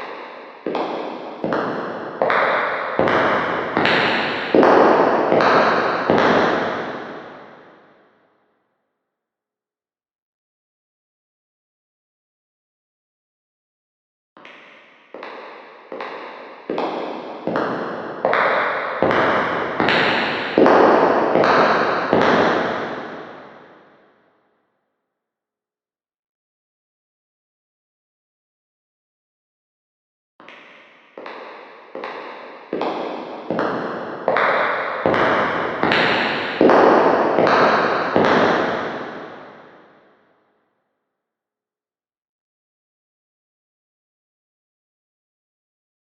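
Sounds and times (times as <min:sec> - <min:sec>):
echoing footsteps: 0:00.0 - 0:07.7, 0:14.9 - 0:23.7, 0:30.8 - 0:39.9.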